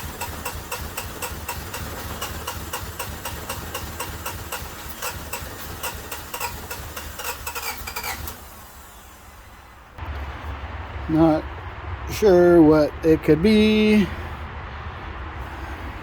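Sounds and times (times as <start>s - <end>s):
starter motor cranking engine: 0.0s - 9.7s.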